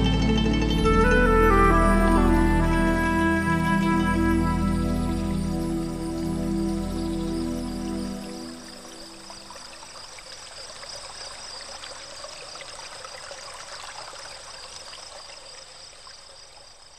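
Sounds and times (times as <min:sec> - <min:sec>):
trickling water splashing: 0:00.0 - 0:16.9.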